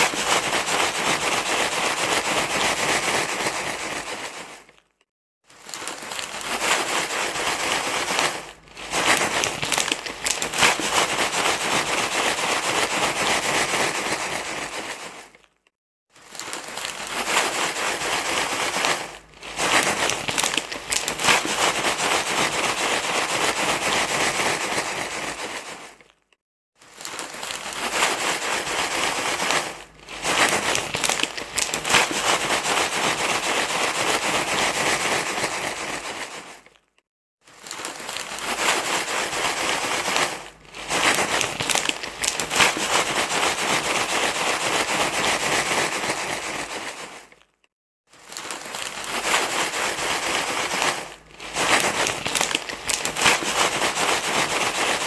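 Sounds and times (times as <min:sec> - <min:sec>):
steady crinkling rustle: 0:00.0 - 0:55.0.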